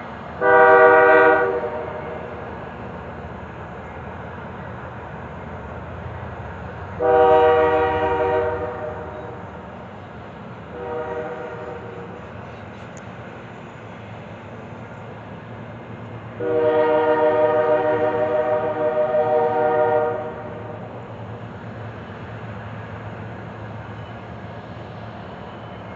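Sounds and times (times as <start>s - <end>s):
locomotive air horn blasts: 0.4s - 2.4s, 7.0s - 9.4s, 10.7s - 12.2s, 16.4s - 20.8s.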